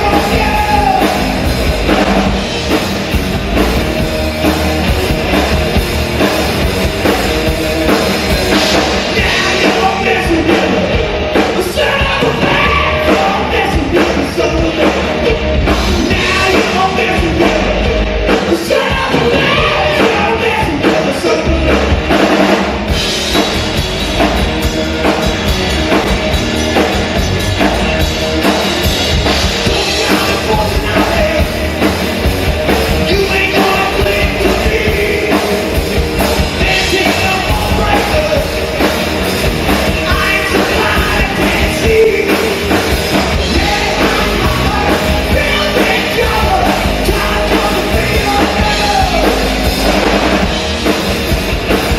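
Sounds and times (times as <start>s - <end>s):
person singing: 0.0s - 2.3s, 9.0s - 22.0s, 29.6s - 31.9s, 33.0s - 35.8s, 36.5s - 38.9s, 40.0s - 49.8s
distorted guitars: 0.0s - 51.9s
drum kit: 0.0s - 51.9s.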